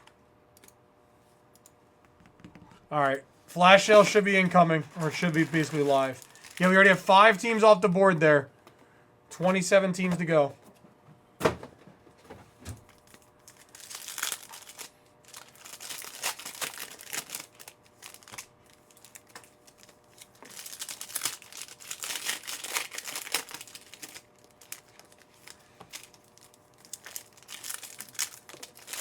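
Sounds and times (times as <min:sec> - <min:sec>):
card pack wrappers crinkling tearing: 0:03.6 - 0:07.8, 0:12.9 - 0:29.0.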